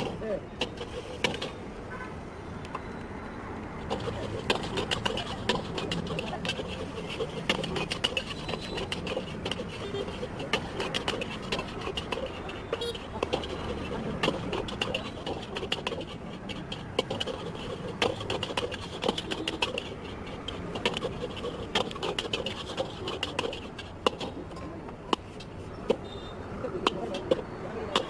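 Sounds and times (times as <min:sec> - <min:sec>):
metal spatula scraping a wok: 0:00.6 - 0:01.6, 0:03.9 - 0:24.4.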